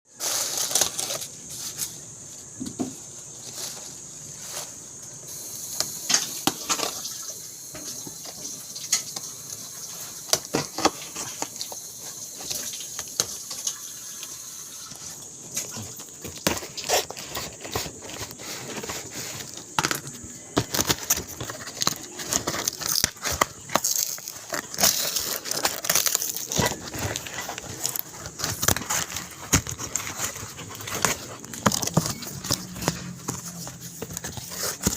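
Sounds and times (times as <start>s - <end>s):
packaging rustling and clicking: 14.9s - 34.9s.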